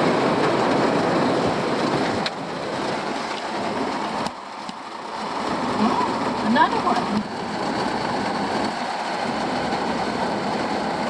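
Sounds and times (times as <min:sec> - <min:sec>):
steady rain on vehicle roof: 0:00.0 - 0:11.0.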